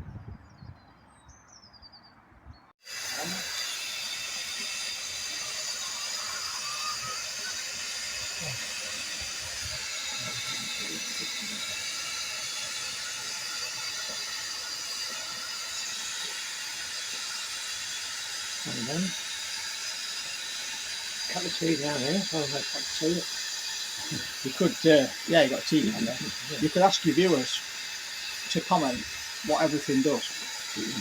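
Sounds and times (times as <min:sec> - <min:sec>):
steam hissing: 0:02.8 - 0:31.0.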